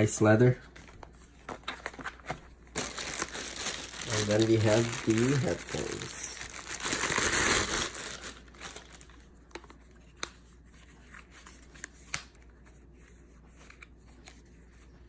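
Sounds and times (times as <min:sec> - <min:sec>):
packaging crinkling and rustling: 0:00.8 - 0:09.9.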